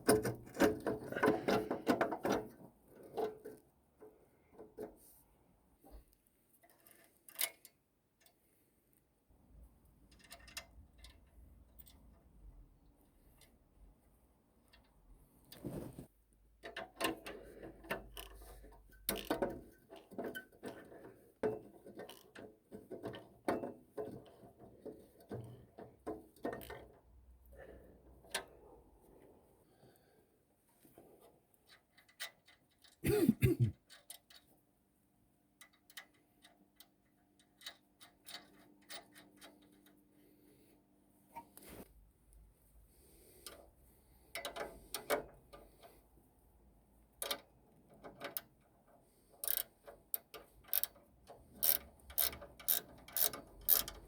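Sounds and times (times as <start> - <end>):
ratchet ticking: 49.4 - 49.7, 50.7 - 51.0, 51.6 - 54.0
hand tools clicking on metal: 49.4 - 51.0, 51.6 - 54.0.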